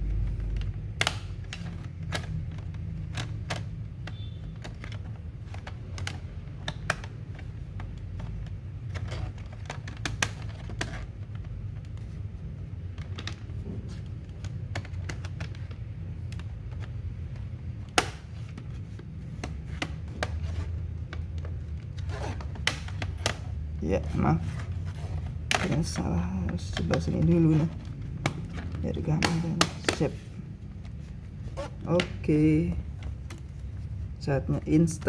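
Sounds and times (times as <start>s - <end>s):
low steady hum: 0.0s - 35.0s
plastic clicks and snaps: 0.1s - 23.6s.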